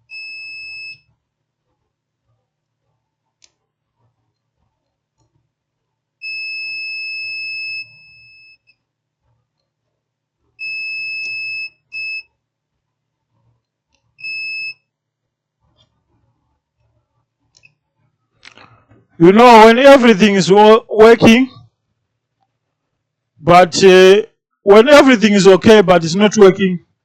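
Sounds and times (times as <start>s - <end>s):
multimeter beeping: 6.2s - 8.8s, 10.6s - 12.3s, 14.2s - 14.9s.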